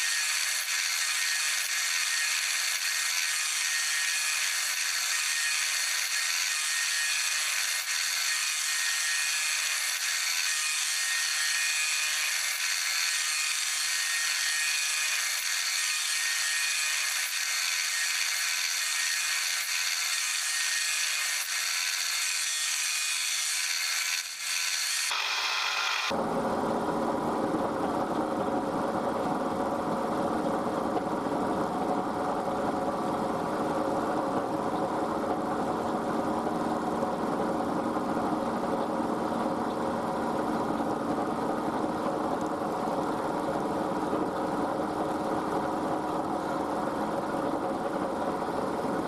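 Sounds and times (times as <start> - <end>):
arc welding crackling hiss: 24.1 - 26.1.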